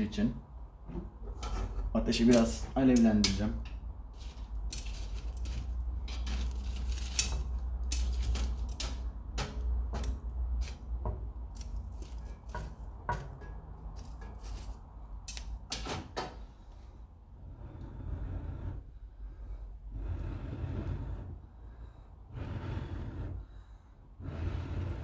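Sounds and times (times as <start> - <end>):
metal tool scraping fireplace grate: 1.2 - 10.9, 11.5 - 16.0.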